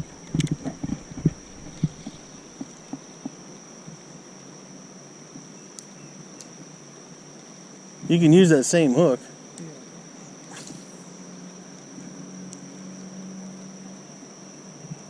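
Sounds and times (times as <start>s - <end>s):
insects droning: 0.0s - 15.0s.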